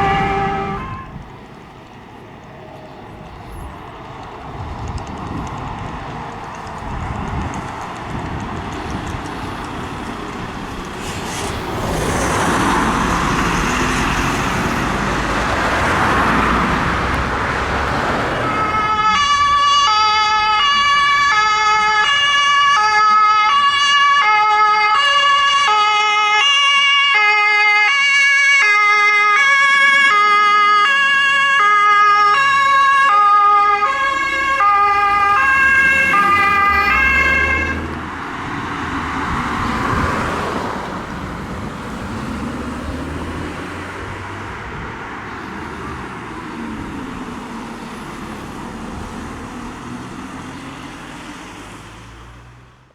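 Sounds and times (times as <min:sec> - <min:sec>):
fire engine two-tone siren: 0:00.0 - 0:01.4, 0:18.2 - 0:38.1
passing vehicle road noise: 0:00.0 - 0:52.9.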